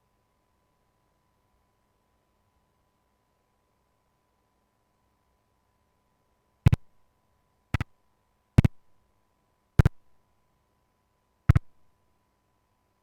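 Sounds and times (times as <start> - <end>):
sharp double clicks: 6.7 - 6.9, 8.6 - 8.8, 9.8 - 10.0, 11.5 - 11.8.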